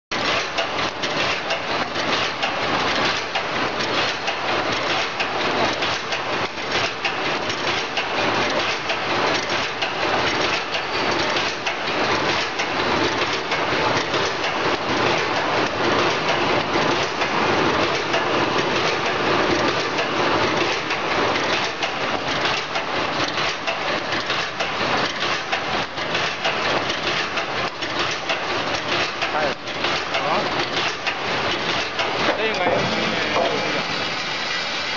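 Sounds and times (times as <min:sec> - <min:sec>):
welding machine clattering: 0:00.1 - 0:34.8.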